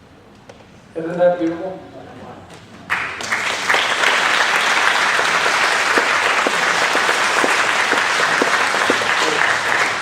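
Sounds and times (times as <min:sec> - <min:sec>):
congregation applauding: 0:02.9 - 0:10.0.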